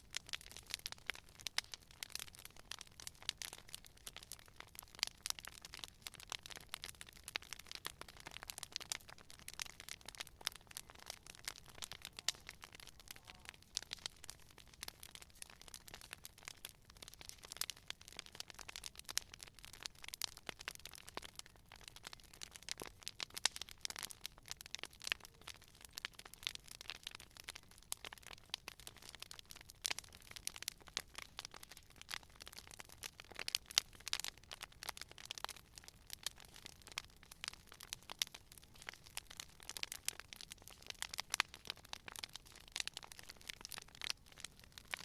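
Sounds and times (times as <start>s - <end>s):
campfire crackling and popping: 0.0s - 45.0s.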